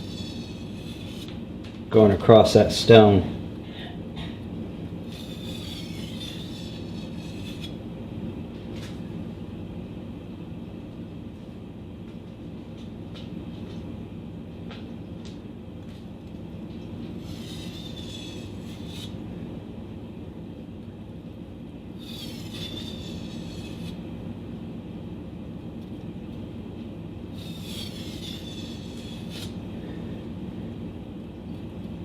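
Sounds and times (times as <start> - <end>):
blade grinding on water stone: 0.0 - 1.3, 5.1 - 7.8, 17.2 - 19.2, 22.0 - 24.0, 27.4 - 29.6.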